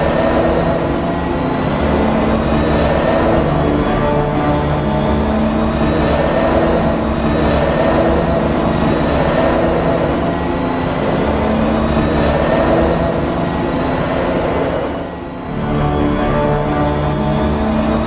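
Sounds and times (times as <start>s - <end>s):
heavy motorcycle engine running: 0.0s - 14.4s.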